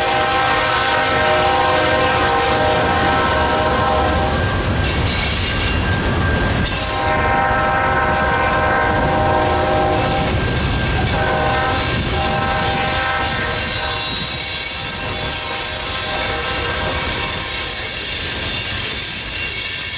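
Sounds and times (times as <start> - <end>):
train cars rumbling over rails: 0.0 - 19.9
thin high squealing: 9.4 - 19.9.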